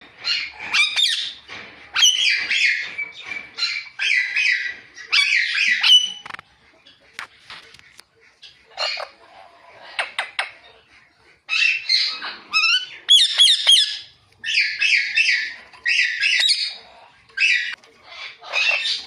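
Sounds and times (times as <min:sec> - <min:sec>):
parakeet chirping and squawking: 0:00.1 - 0:06.6, 0:08.3 - 0:19.0.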